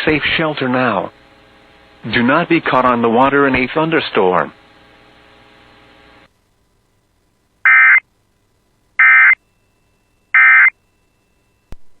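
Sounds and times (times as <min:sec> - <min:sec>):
digital data tone bursts: 0:07.7 - 0:08.0, 0:09.0 - 0:09.5, 0:10.3 - 0:10.8.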